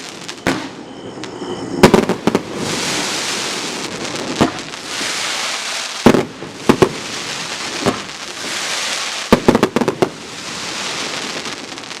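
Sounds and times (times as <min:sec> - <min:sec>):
fireworks bangs: 0:00.0 - 0:12.0
steady hiss: 0:02.5 - 0:09.4.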